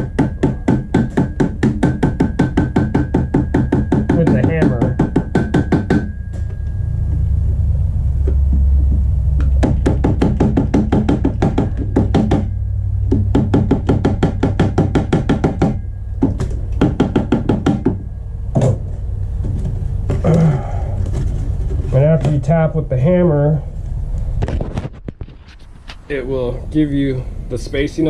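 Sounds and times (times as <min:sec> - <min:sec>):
hammer tapping on cardboard: 0:00.0 - 0:06.1, 0:08.9 - 0:18.0
low rumble: 0:04.7 - 0:28.0.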